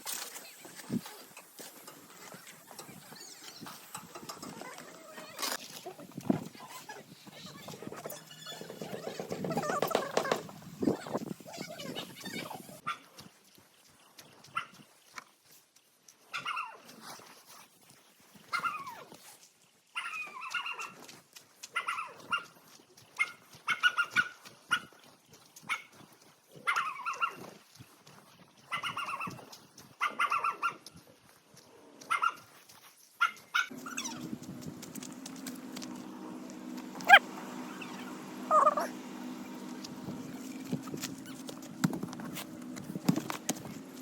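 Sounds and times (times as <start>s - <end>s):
animal calling: 36.6s - 39.6s.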